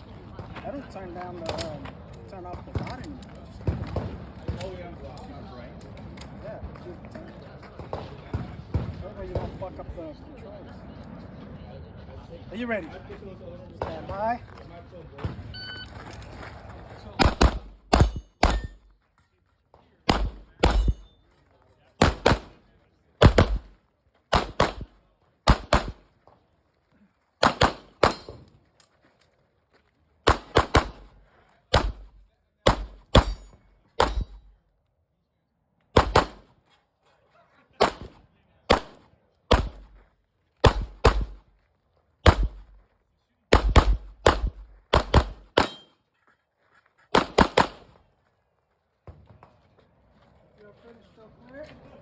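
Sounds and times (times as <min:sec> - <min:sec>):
pistol gunfire: 0:17.2 - 0:18.8, 0:20.1 - 0:21.1, 0:22.0 - 0:22.6, 0:23.2 - 0:23.7, 0:24.3 - 0:26.1, 0:27.4 - 0:28.4, 0:30.2 - 0:34.5, 0:36.0 - 0:36.5, 0:37.8 - 0:40.0, 0:40.6 - 0:41.4, 0:42.2 - 0:42.8, 0:43.5 - 0:45.9, 0:47.1 - 0:48.0.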